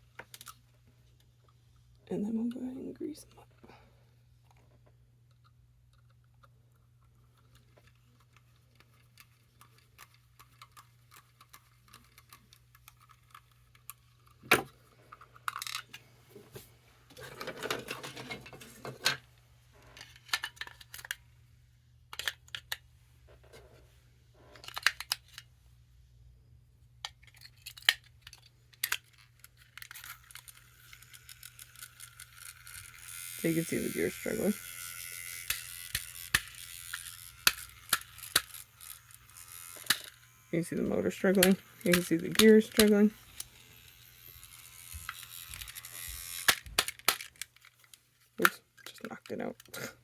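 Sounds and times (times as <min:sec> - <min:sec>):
plastic parts clicking and rattling: 0:00.0 - 0:01.6, 0:04.4 - 0:16.1, 0:17.1 - 0:21.4, 0:22.1 - 0:23.6, 0:24.4 - 0:25.5, 0:27.0 - 0:50.0
small electric motor whirring: 0:29.8 - 0:47.8.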